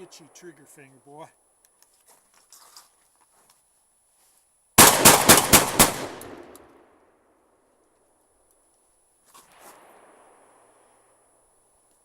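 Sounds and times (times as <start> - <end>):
rapid gunfire burst: 4.8 - 6.2.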